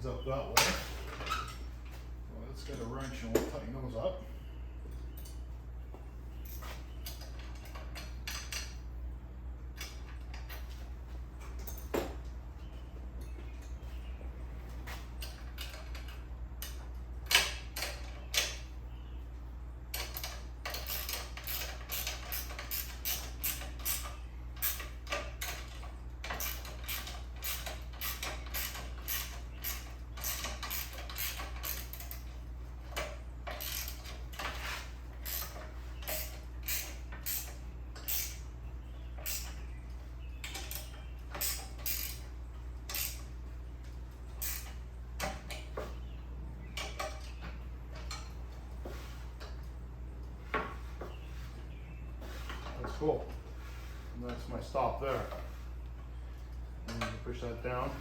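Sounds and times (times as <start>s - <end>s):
steady low hum: 0.0s - 58.0s
wrench clicking: 20.0s - 32.3s, 32.9s - 38.4s, 39.2s - 39.6s, 40.4s - 43.3s, 44.4s - 45.6s.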